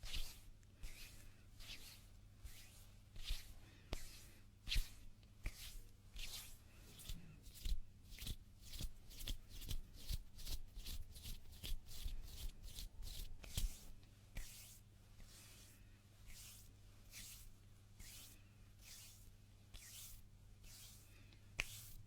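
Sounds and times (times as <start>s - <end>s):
hands rubbing together: 12.4s - 22.0s.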